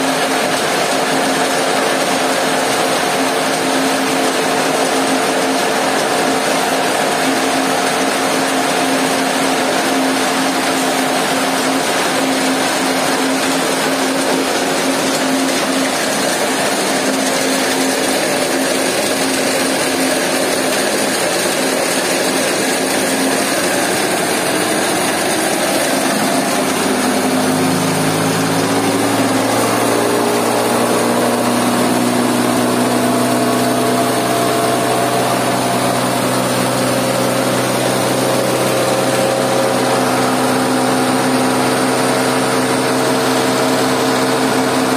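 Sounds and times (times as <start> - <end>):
stone crusher running: 0.0 - 44.9
electric motor hum: 22.3 - 44.9.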